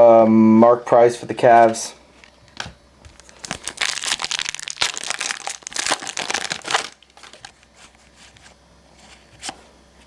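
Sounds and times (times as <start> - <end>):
plastic packaging crinkling: 2.2 - 8.5.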